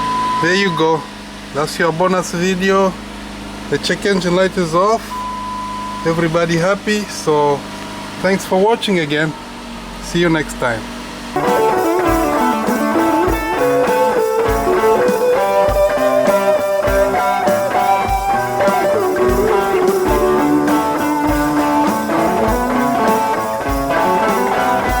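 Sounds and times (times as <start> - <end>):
electric guitar over a beat: 11.4 - 25.0.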